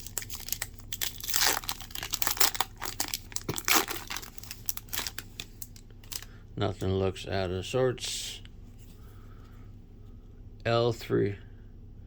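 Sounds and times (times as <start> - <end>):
cards rustling: 0.0 - 6.3.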